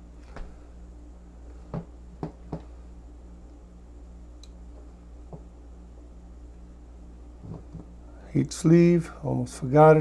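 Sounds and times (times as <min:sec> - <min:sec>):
low electrical hum: 0:00.0 - 0:10.0.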